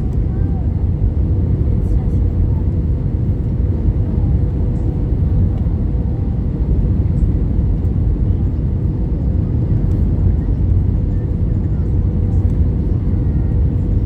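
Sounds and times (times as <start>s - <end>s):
jet engines low rumble: 0.0s - 14.0s.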